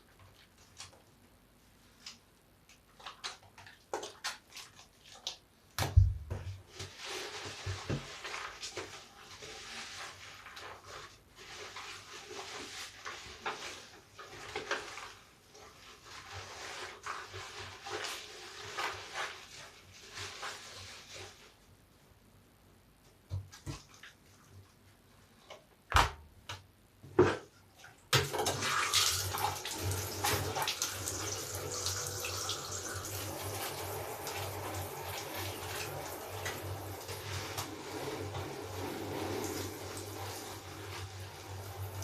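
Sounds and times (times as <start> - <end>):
wet sponge squishing: 2.0 - 21.7.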